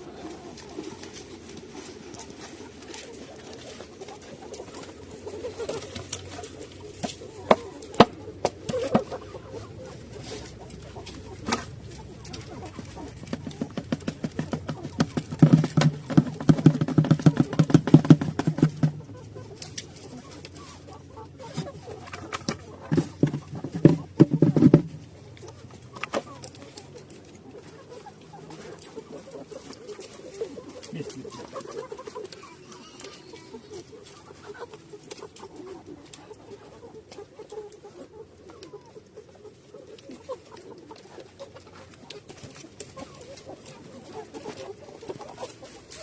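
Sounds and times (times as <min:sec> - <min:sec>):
household items knocking and rattling: 0:12.3 - 0:19.2, 0:22.3 - 0:25.0.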